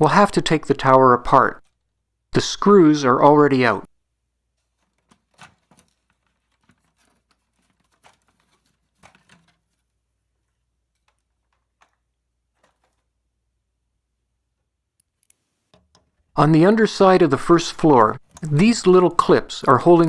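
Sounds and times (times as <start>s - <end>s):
plastic toy parts clicking: 18.2s - 18.8s.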